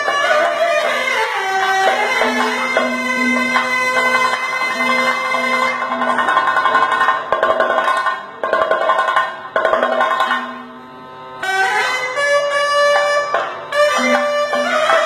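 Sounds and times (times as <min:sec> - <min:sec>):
sustained held notes: 0:02.2 - 0:07.0.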